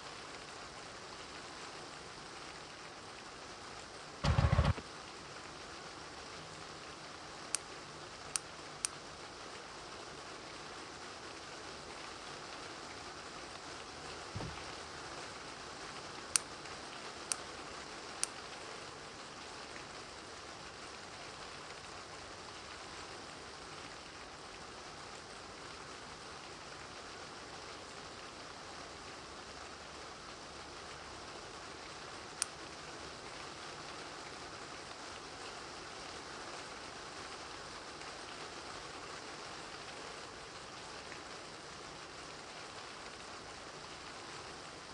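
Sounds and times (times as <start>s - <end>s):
sharp ticks: 4.2s - 4.8s
steady rain falling: 5.4s - 44.9s
dull low thud: 14.4s - 14.7s.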